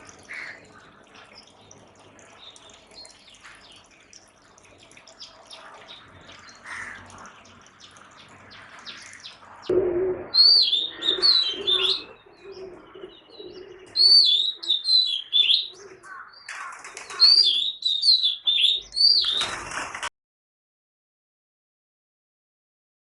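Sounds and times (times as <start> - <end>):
bird singing whistled notes: 10.3 - 12.1.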